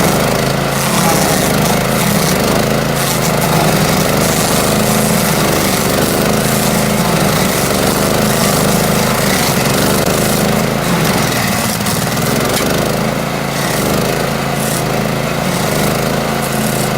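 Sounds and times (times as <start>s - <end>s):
small petrol engine running: 0.0s - 16.9s.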